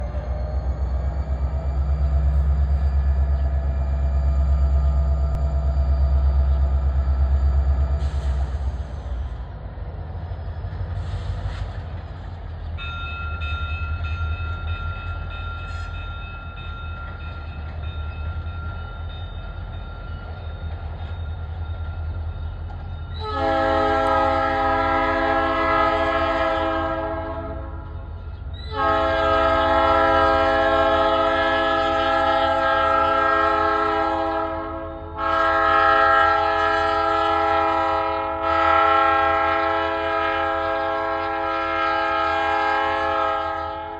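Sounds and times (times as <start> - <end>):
electronic locomotive bell ringing: 0.0 - 8.0, 12.7 - 26.4
diesel locomotive rumbling: 0.0 - 43.9
locomotive horn blasts: 23.2 - 28.0, 28.7 - 43.9.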